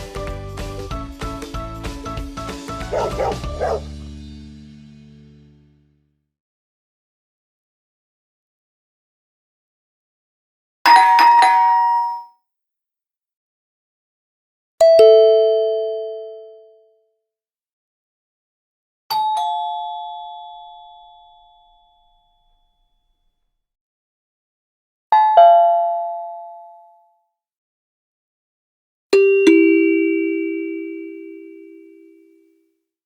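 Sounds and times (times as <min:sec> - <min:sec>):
doorbell ding-dong chimes: 0:10.9 - 0:12.3, 0:14.8 - 0:16.8, 0:25.2 - 0:27.0, 0:29.2 - 0:32.3.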